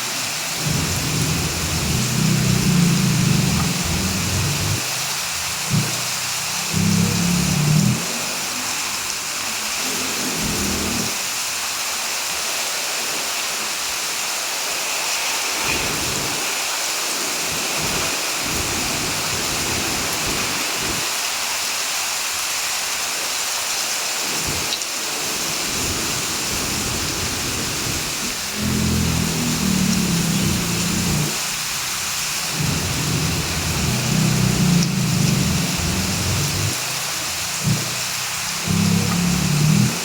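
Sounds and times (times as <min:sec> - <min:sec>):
heavy rain hissing: 0:00.0 - 0:40.0
low rumbles: 0:00.6 - 0:04.8, 0:32.5 - 0:36.8, 0:37.6 - 0:38.0.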